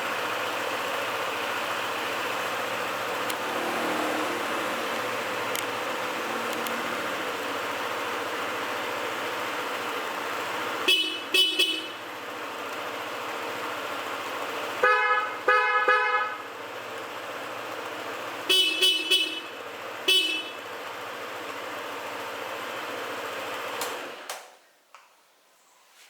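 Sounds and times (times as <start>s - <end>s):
vehicle horn toots: 10.8s - 12.0s, 14.8s - 16.5s, 18.4s - 20.7s.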